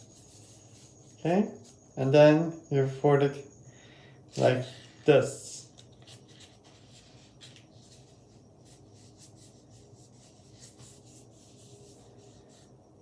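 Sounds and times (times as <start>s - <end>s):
soft paper crinkles: 4.3s - 12.7s
paper being folded and creased: 5.9s - 12.6s.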